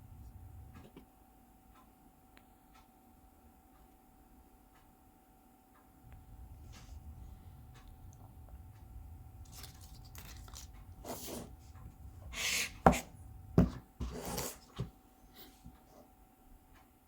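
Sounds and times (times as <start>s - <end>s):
packaging rustling and scraping: 9.5s - 11.6s.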